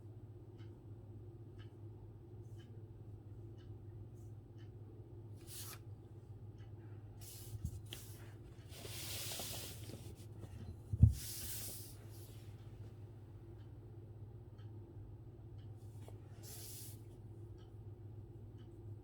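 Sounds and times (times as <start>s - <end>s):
brush sliding across paper: 7.2s - 12.5s, 16.4s - 17.0s.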